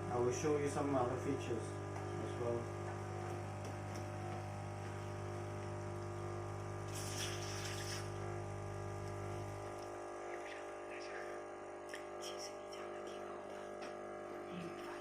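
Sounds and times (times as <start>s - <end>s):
coffee machine pump humming: 0.0s - 15.0s.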